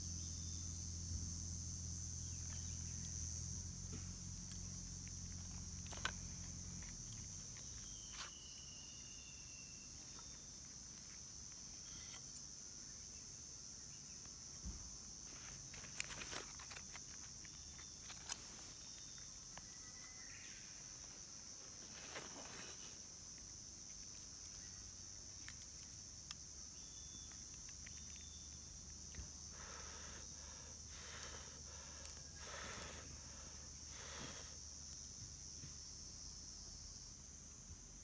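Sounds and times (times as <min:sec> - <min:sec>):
insect chorus: 0:00.0 - 0:38.0
small clicks and snaps: 0:15.7 - 0:20.2, 0:23.3 - 0:29.5.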